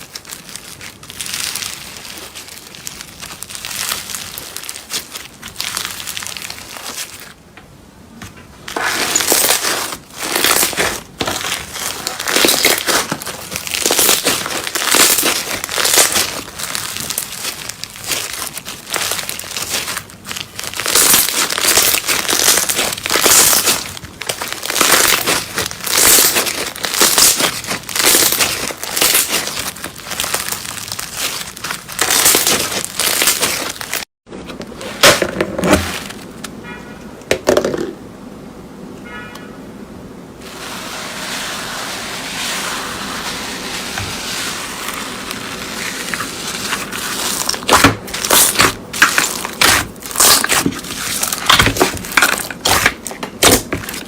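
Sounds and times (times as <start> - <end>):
slime crackling and crinkling: 0.0 - 7.5, 8.2 - 34.1, 34.7 - 36.6, 40.4 - 54.0.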